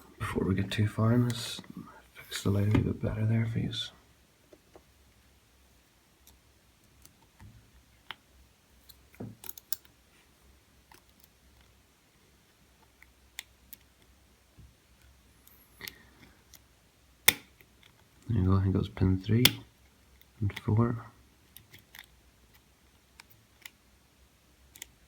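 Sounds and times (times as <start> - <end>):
small clicks and taps: 24.7 - 25.0.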